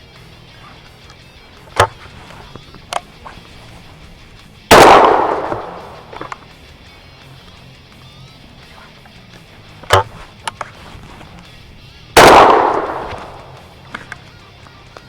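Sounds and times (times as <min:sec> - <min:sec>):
soft background music: 0:00.0 - 0:15.0
sharp clicks: 0:00.4 - 0:11.6, 0:12.2 - 0:15.0
shotgun shot: 0:04.7 - 0:06.4, 0:12.2 - 0:13.7.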